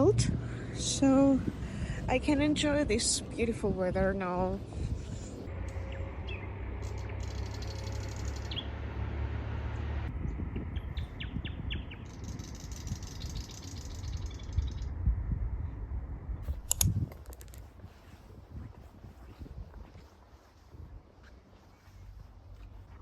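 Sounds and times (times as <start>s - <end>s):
wind rumble on microphone: 0.0s - 23.0s
bird chirps: 5.6s - 8.8s, 10.3s - 15.0s.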